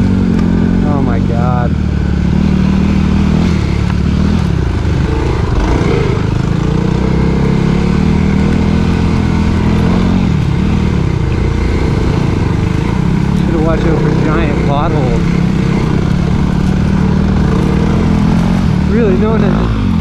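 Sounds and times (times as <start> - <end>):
dirt bike engine revving: 0.0 - 20.0.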